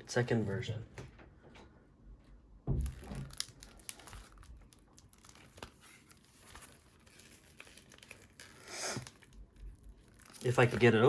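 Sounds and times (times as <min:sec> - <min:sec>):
dull thump of album handled: 0:02.6 - 0:03.4
shrink wrap crinkling and tearing: 0:02.8 - 0:11.0.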